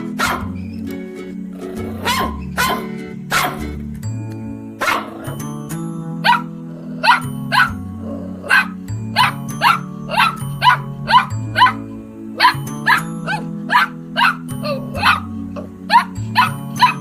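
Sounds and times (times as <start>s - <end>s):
background music: 0.0s - 17.0s
dog barking: 0.2s - 0.6s, 2.0s - 3.7s, 4.8s - 5.3s, 6.2s - 7.8s, 8.4s - 11.8s, 12.4s - 15.3s, 15.9s - 17.0s.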